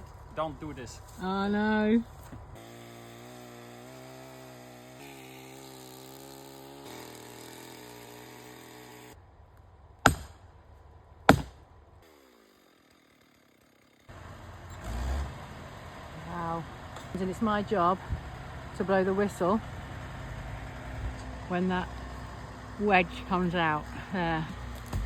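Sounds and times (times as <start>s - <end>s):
chainsaw engine running: 0.0s - 9.2s, 12.0s - 25.0s
sharp loud knocks: 11.3s - 11.6s.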